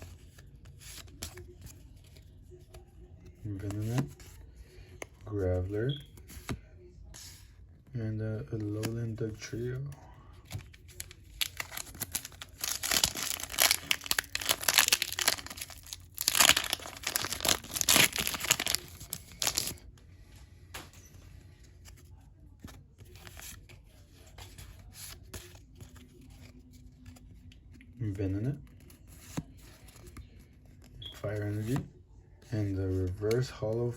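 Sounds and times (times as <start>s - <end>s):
card pack wrapper tearing: 10.5s - 19.8s.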